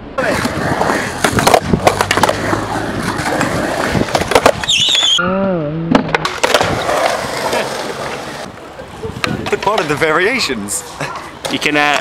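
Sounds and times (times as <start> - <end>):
skateboard wheels rolling: 0.1 - 5.2, 6.0 - 12.0
high squeal: 4.6 - 5.4
wavering pitched tone: 4.8 - 5.9.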